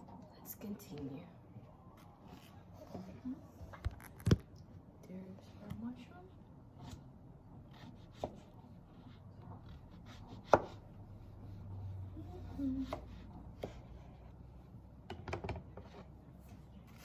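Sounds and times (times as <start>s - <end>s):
knife chopping on cutting board: 7.7s - 8.5s, 9.6s - 10.8s, 12.8s - 14.1s.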